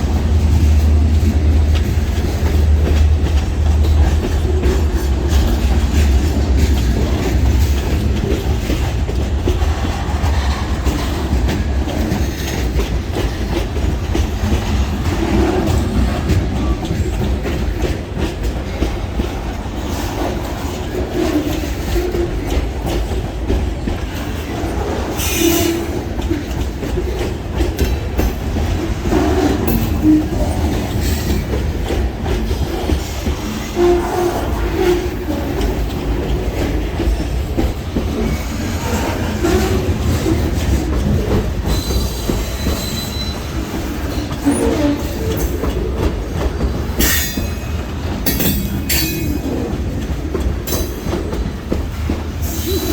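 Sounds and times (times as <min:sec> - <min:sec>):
train wheels rumbling on rails: 0:00.0 - 0:52.9
wheel squeals: 0:41.7 - 0:45.7.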